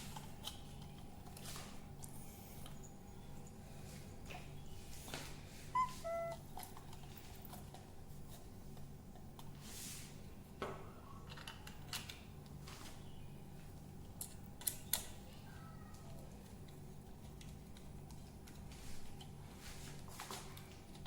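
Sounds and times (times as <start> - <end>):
low steady hum: 0.0 - 21.0
short electronic beeps: 5.8 - 6.4
clicks and knocks of handling: 10.6 - 13.0, 15.9 - 21.0.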